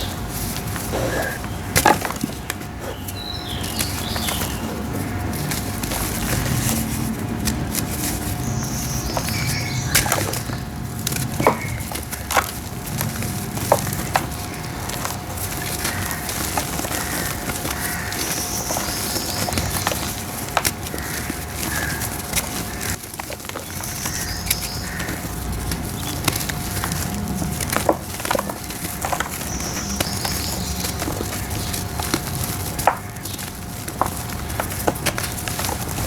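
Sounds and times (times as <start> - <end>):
gritty crunching of crumbling dirt: 0.0 - 36.0
sharp cracks of pieces snapping: 9.4 - 36.0.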